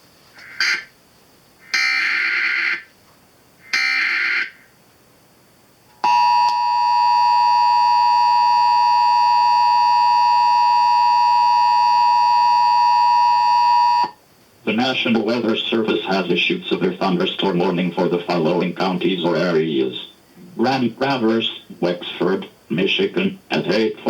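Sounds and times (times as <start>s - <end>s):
two-tone attention signal: 6.0s - 14.2s.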